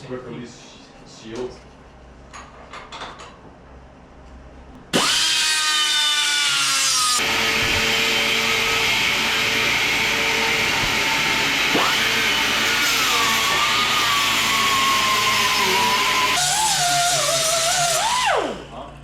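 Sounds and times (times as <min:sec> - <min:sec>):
angle grinder whining: 0:04.9 - 0:18.8
grinding wheel on metal: 0:05.0 - 0:18.1.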